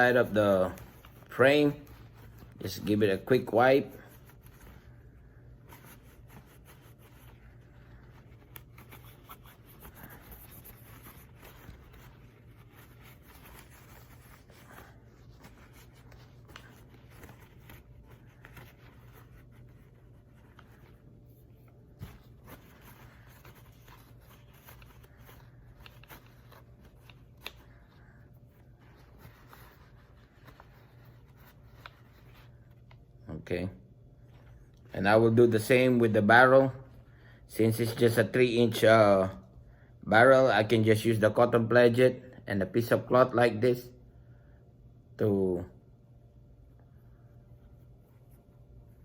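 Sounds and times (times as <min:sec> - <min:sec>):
cloth rubbing on metal: 0:00.0 - 0:27.3
steady low hum: 0:00.0 - 0:40.6.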